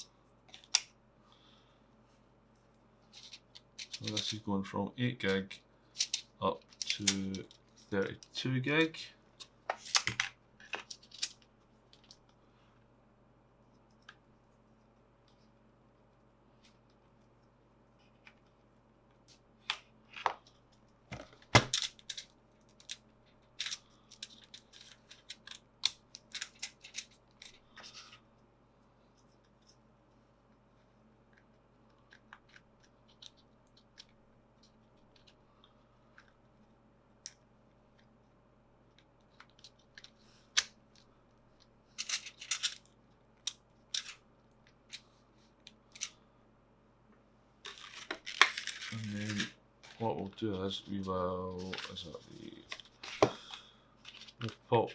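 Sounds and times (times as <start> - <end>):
plastic rustles: 47.7 - 50.4.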